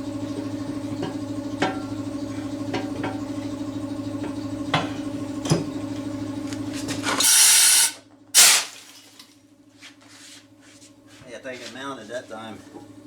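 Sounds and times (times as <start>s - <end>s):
air compressor running: 0.0s - 8.8s.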